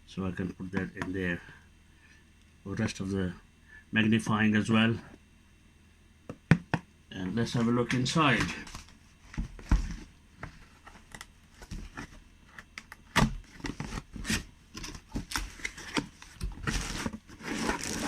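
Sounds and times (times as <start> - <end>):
packaging rustle: 13.4 - 18.0.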